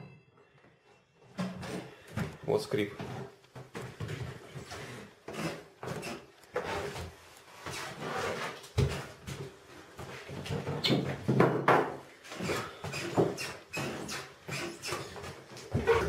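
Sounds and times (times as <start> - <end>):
wooden floorboards creaking: 12.3 - 16.0.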